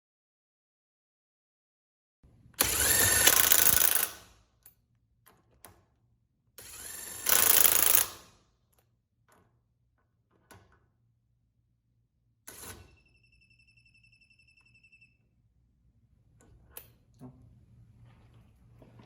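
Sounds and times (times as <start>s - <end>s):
impact wrench hammering: 2.6s - 4.2s, 6.9s - 8.2s.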